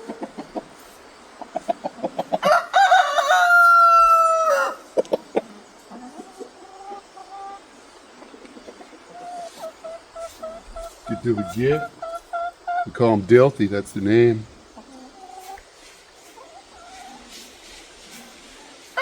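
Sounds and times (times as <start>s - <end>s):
chickens clucking: 0.0s - 19.0s
rooster crowing: 2.4s - 4.9s.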